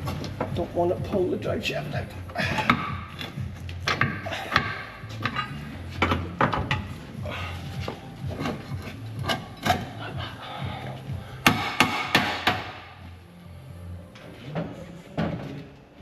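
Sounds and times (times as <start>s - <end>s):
metal suspension parts clunking: 2.2s - 10.4s.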